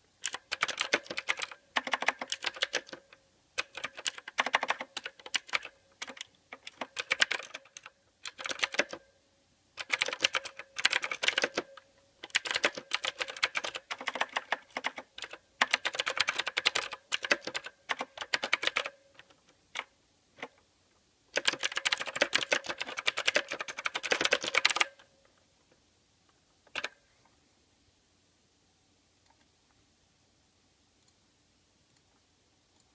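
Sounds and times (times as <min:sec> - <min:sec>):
mechanical keyboard typing: 0:00.2 - 0:09.1, 0:09.8 - 0:20.6, 0:21.3 - 0:25.1, 0:26.7 - 0:27.0.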